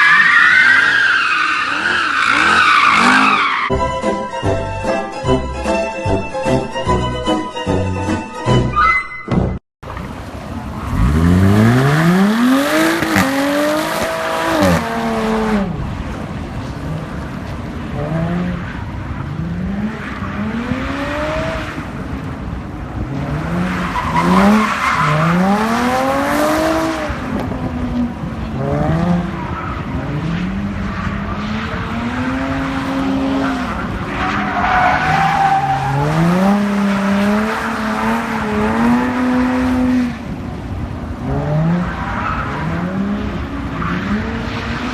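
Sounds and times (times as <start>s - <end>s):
tyres squealing and skidding: 0.0s - 3.8s, 8.6s - 9.4s, 23.2s - 27.2s, 28.6s - 40.0s, 41.3s - 44.9s
car engine revving hard: 10.8s - 15.8s, 23.1s - 27.3s.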